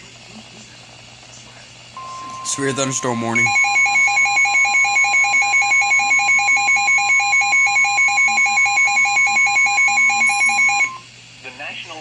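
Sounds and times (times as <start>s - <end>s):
rapid alert beeping: 2.0s - 11.0s
steady high alarm tone: 2.0s - 11.1s.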